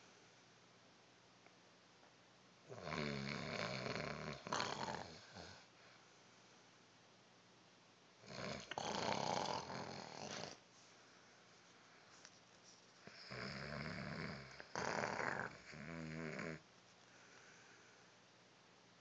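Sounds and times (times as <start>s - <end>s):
person snoring: 2.7s - 5.7s, 8.2s - 10.6s, 13.1s - 16.6s.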